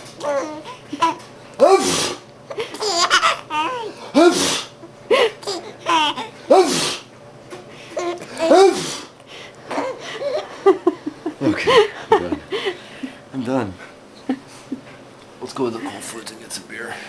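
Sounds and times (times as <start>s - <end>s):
baby laughing: 0.2s - 1.8s, 2.5s - 4.4s, 5.2s - 6.6s, 8.0s - 8.8s, 9.7s - 10.8s
man sneezing: 1.6s - 2.2s, 4.1s - 4.8s, 6.5s - 7.1s, 8.4s - 9.1s.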